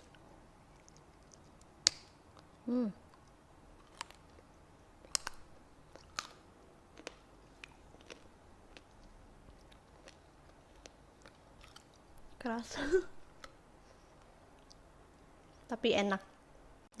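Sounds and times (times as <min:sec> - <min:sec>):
crunchy sweet being chewed: 0:00.0 - 0:12.4.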